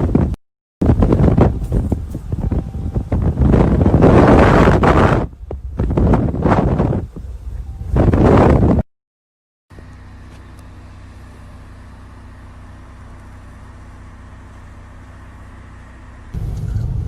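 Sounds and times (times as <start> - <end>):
loud gusty noise: 0.2 - 8.8
vehicle engine droning: 0.8 - 8.4, 9.7 - 17.0.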